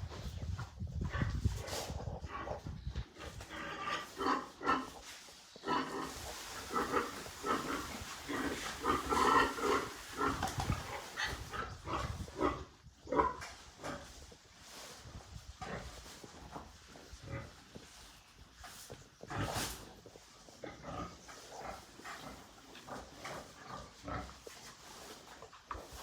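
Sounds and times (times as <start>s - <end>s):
farm animals calling: 2.3s - 14.1s.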